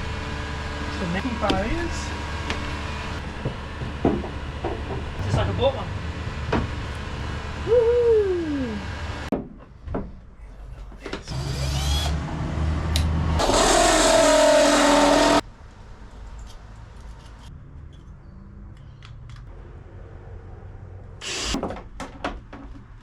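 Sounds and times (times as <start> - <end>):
power drill whining: 11.3 - 12.2, 13.4 - 15.4, 21.2 - 21.6.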